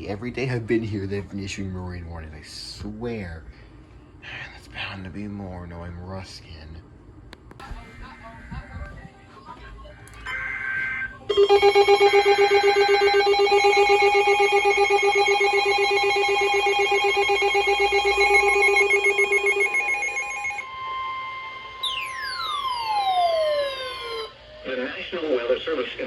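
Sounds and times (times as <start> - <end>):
steady warning alarm tone: 10.2 - 25.3
rapidly pulsing alarm: 10.2 - 25.8
two-tone data burst: 10.3 - 24.4
tone sweeping downward: 11.3 - 24.7.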